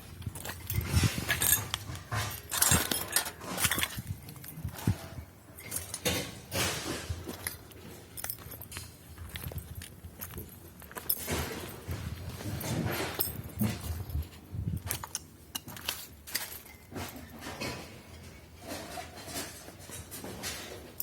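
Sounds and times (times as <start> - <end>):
scrap metal clinking: 0.2 - 8.8.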